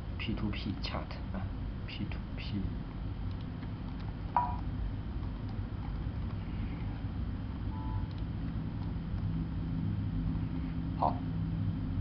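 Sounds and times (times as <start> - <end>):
steady low hum: 0.0 - 12.0
faint brief tone: 7.7 - 8.1.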